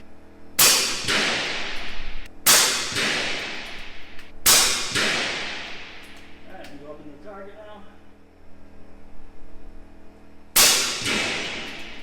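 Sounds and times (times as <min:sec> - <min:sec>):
air rifle shots echoing: 0:00.6 - 0:06.4, 0:10.5 - 0:12.0.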